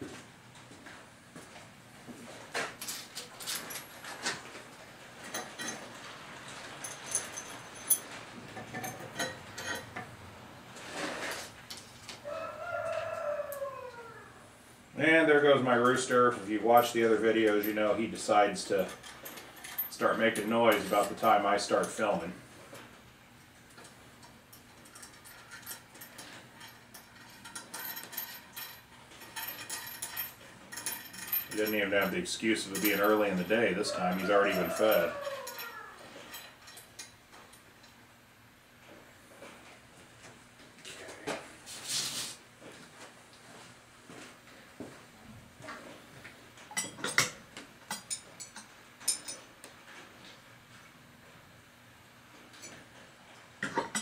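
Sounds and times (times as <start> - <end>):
metal tools clinking: 2.8 - 4.4, 5.2 - 10.1, 16.7 - 22.3, 23.8 - 37.9, 46.7 - 49.5, 53.6 - 54.0
rooster crowing: 12.2 - 14.5, 33.7 - 36.1.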